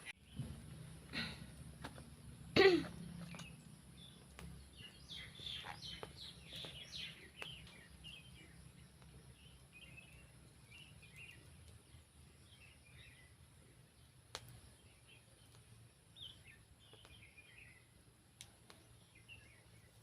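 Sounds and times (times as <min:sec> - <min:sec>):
birds chirping: 0:02.9 - 0:20.0.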